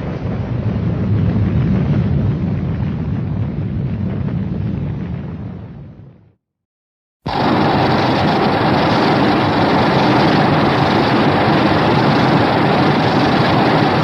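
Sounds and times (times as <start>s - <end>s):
loud continuous rushing noise: 7.3s - 14.0s.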